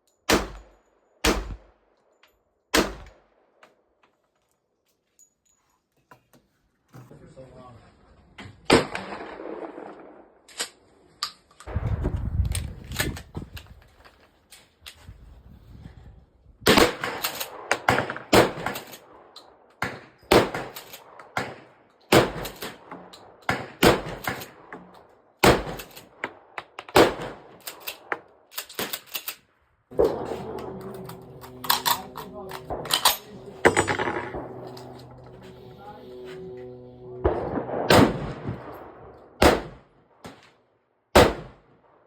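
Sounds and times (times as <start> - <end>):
gunshots with short echo: 0.3 - 1.7, 37.3 - 39.9.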